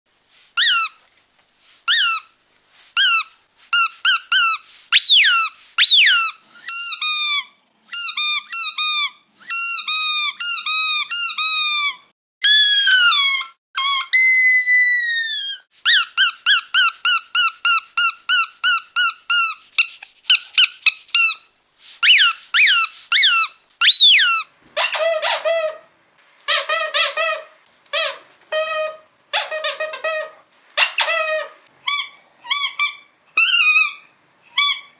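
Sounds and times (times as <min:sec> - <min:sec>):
squeaky dog toy squeaking: 0:00.6 - 0:01.0, 0:01.9 - 0:02.3, 0:03.0 - 0:25.9, 0:26.5 - 0:34.9.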